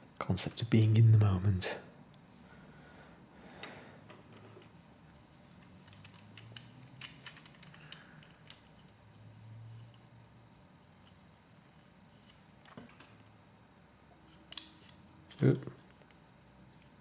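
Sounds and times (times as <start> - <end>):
plastic pieces clicking together: 5.6 - 8.9.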